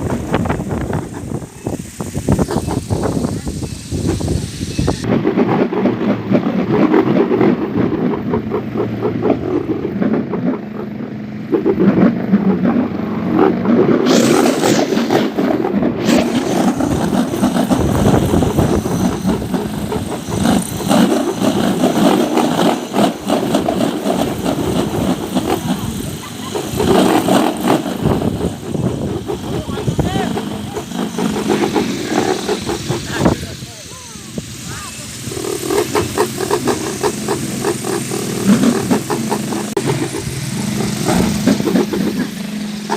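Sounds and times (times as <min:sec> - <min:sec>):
propeller toy whirring: 0:00.0 - 0:42.9
steady low hum: 0:00.0 - 0:42.9.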